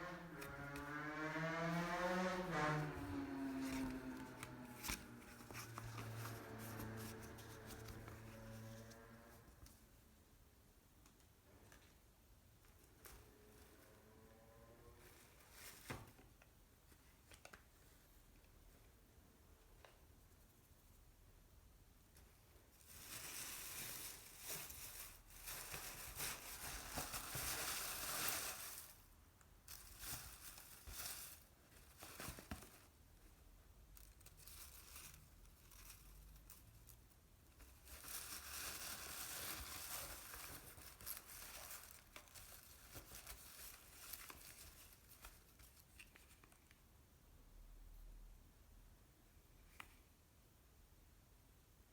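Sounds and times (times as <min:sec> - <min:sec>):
wrapping crinkling and tearing: 0:01.4 - 0:09.3, 0:22.8 - 0:33.0, 0:33.9 - 0:46.8
small rustles and clicks: 0:22.1 - 0:46.9.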